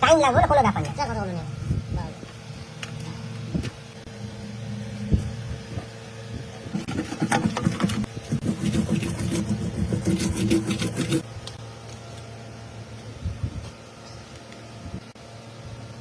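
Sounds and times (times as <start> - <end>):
motor humming: 0.8 - 12.3.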